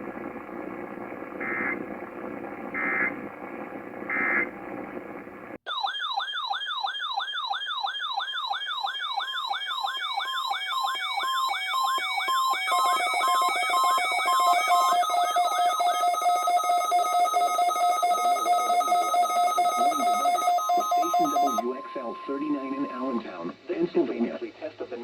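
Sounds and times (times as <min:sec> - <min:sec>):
radio hiss: 0:00.0 - 0:05.6, 0:18.4 - 0:25.0
electronic warbling alarm siren: 0:02.8 - 0:03.1, 0:05.7 - 0:23.3
pulsing stepped siren: 0:05.7 - 0:23.2
data tone bursts: 0:12.0 - 0:23.4.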